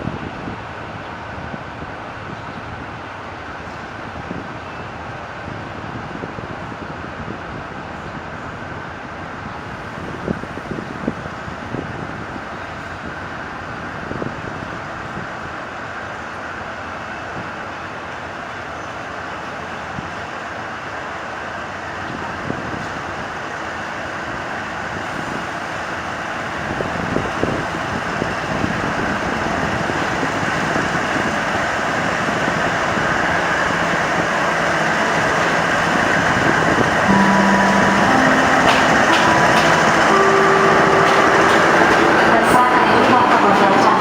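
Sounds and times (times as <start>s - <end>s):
diesel locomotive engine running: 20.5s - 44.0s
short steady tones: 37.1s - 44.0s.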